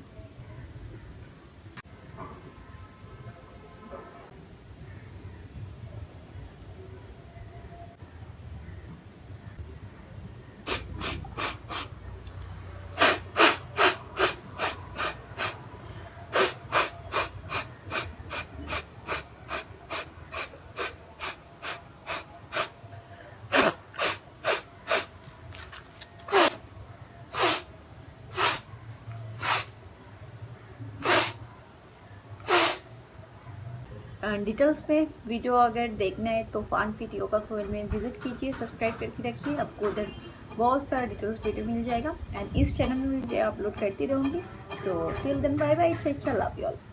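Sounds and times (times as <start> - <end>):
forceful nasal exhalations: 10.6 - 12.0, 13.0 - 22.8, 23.5 - 25.1, 26.2 - 26.6, 27.3 - 27.7, 28.3 - 28.7, 29.4 - 29.7, 31.0 - 31.4, 32.4 - 32.9.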